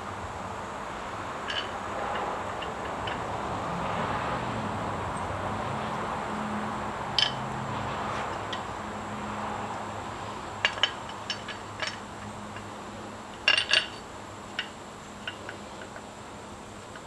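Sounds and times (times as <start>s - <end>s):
metal parts and tools clinking: 1.4s - 3.5s, 7.2s - 7.5s, 8.1s - 8.7s, 10.6s - 16.1s.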